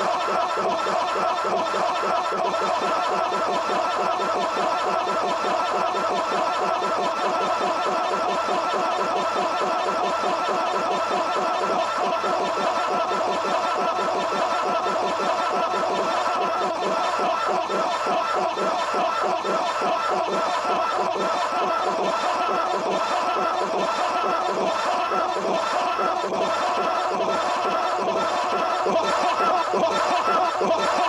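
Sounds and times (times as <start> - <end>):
overlapping voice-like snickers: 0.0 - 31.0.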